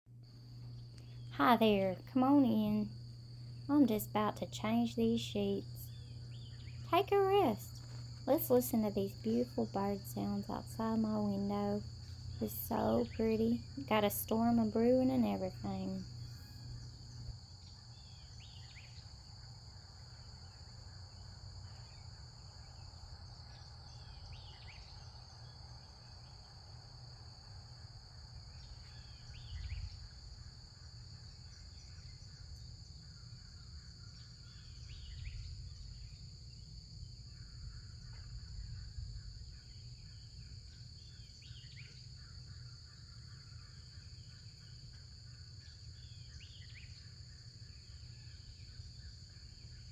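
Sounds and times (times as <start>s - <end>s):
low background rumble: 0.2s - 17.3s
insects droning: 0.2s - 49.9s.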